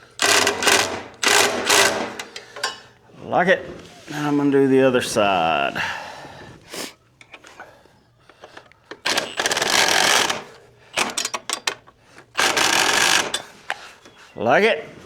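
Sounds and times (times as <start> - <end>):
ratchet wrench clicking: 0.2 - 2.4, 9.0 - 13.5.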